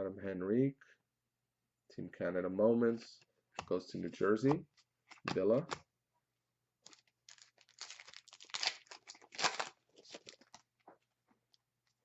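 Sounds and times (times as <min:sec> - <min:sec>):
cards and wrapper rustling: 0:06.8 - 0:12.0.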